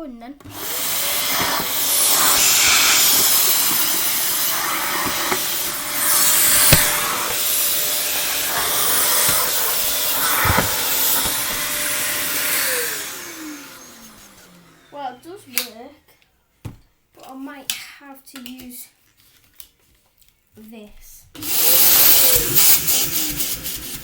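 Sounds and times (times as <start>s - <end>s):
vacuum cleaner running: 0.4s - 15.3s, 21.4s - 24.0s
short thumps: 1.1s - 12.8s.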